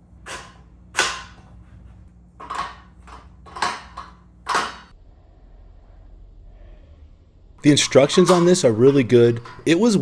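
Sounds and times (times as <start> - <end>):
tools clanking on steel frame: 2.4 - 4.9, 7.7 - 10.0.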